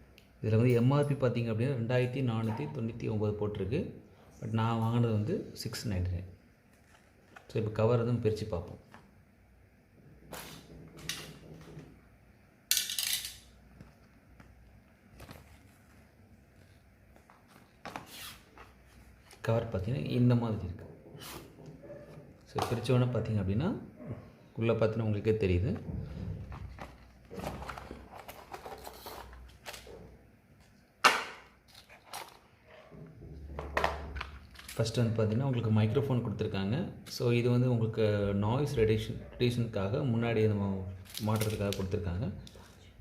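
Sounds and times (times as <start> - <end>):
packaging rustling and scraping: 6.7 - 7.6, 15.1 - 19.5, 25.8 - 30.8, 31.6 - 32.6
packaging clicks and rustles: 26.4 - 30.1, 41.0 - 42.8.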